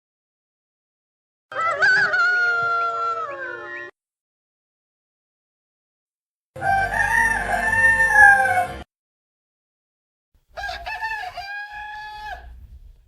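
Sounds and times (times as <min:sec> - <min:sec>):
rooster crowing: 0:01.5 - 0:03.7, 0:06.6 - 0:08.8, 0:10.5 - 0:12.6.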